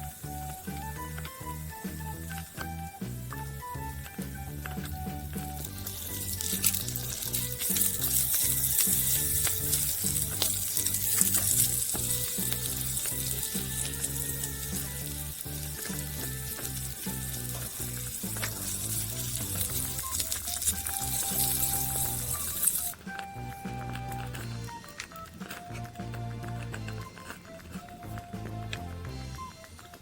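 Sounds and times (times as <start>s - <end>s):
food sizzling in hot oil: 0.0s - 23.2s
background music with bass line: 0.0s - 24.9s, 25.6s - 30.0s.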